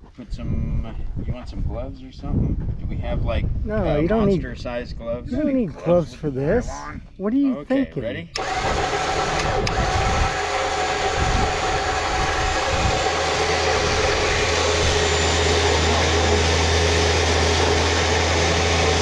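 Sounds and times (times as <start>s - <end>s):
electric winch running: 8.4s - 19.0s.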